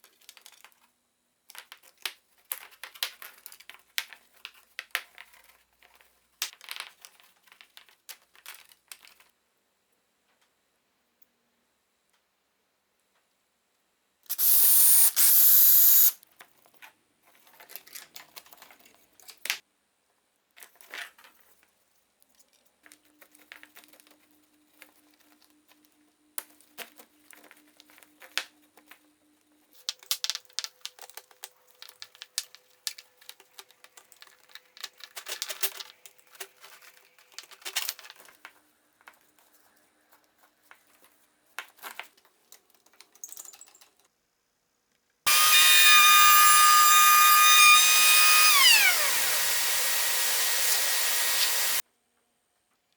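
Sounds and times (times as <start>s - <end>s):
loud hissing burst: 14.3s - 16.2s, 45.3s - 51.8s
tools and wood clicking: 29.8s - 38.3s, 45.3s - 51.8s.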